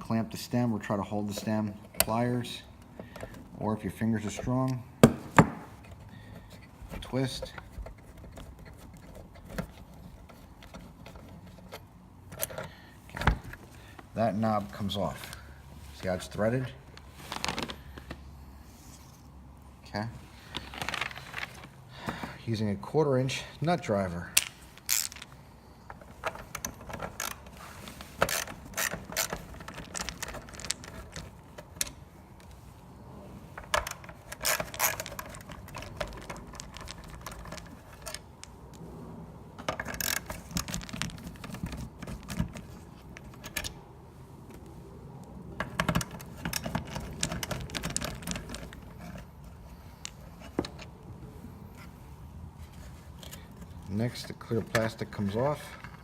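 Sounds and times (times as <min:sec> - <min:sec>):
nut driver clicking and rattling: 0:24.3 - 0:32.0, 0:33.6 - 0:38.8, 0:45.6 - 0:50.9.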